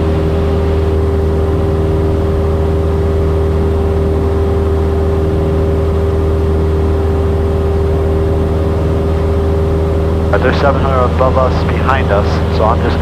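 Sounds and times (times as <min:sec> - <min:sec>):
aircraft engine and propeller droning: 0:00.0 - 0:13.0.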